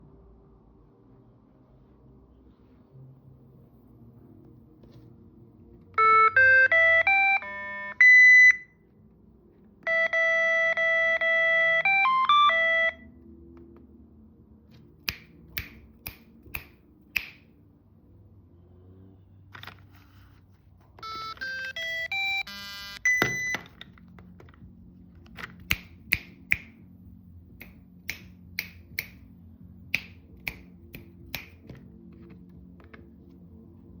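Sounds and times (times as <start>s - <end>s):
electronic beeps rising in pitch: 6.0s - 8.8s, 9.9s - 13.2s, 21.0s - 23.6s.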